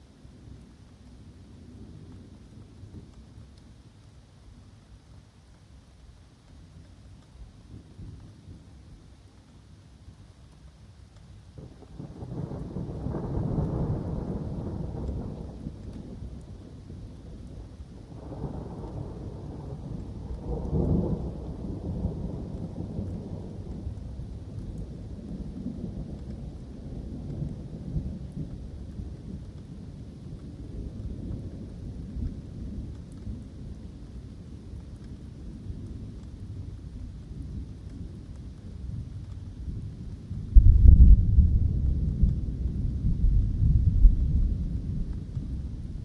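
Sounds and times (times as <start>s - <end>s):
steady rain: 0.0s - 46.0s
thunder rumbling: 40.3s - 46.0s.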